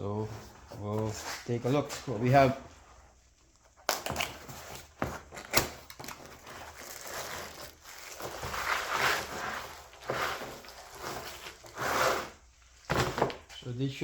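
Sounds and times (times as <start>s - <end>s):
packaging rustling and crinkling: 3.6s - 13.6s.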